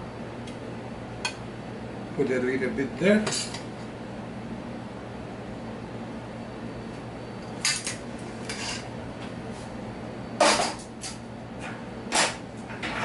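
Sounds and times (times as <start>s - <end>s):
utensil clinking and scraping a dish: 8.4s - 8.9s.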